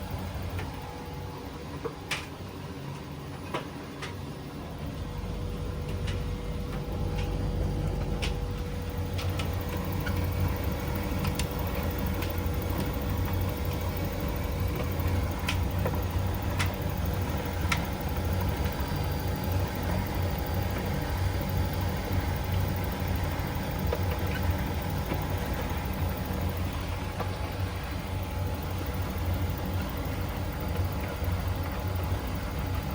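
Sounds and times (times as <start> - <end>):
dryer motor hum: 0.0 - 32.9.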